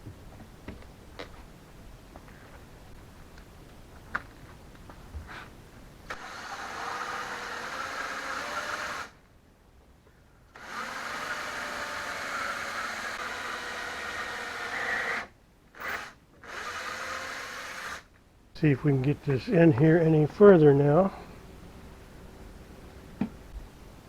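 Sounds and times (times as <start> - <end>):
cordless drill boring into wood: 6.1 - 9.2, 10.6 - 18.1.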